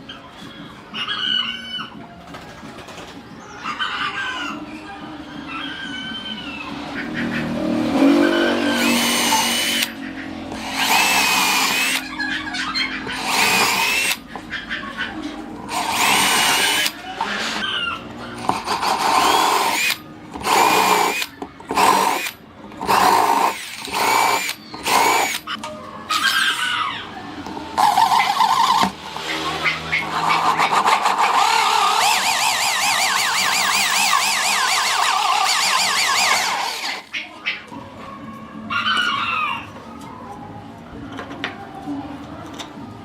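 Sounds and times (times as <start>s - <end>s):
power tool cutting wood: 7.5s - 12.2s, 13.1s - 14.2s, 15.7s - 25.5s, 27.8s - 37.1s.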